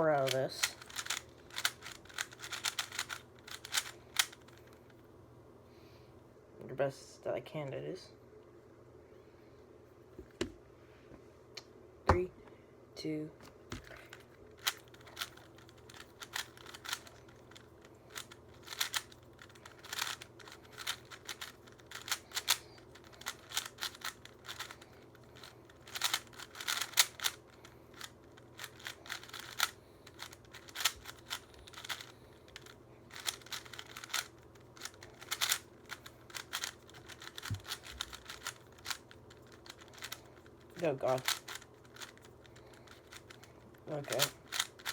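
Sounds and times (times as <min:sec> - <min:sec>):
plastic puzzle cube clicking: 0:00.2 - 0:04.6, 0:14.1 - 0:44.9.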